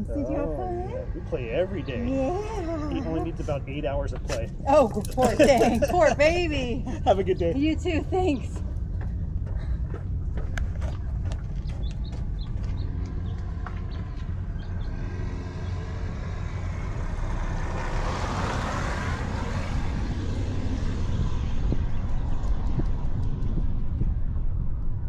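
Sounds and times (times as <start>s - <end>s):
steady low rumble: 0.0s - 25.0s
car passing by: 13.4s - 23.3s.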